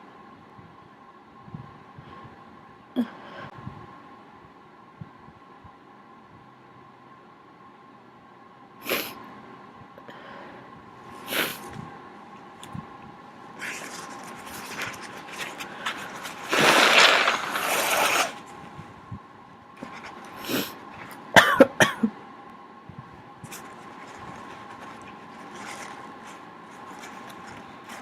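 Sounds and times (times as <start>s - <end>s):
person blowing nose: 13.6s - 18.4s, 19.8s - 20.8s
short sharp bursts of breath: 20.3s - 20.8s.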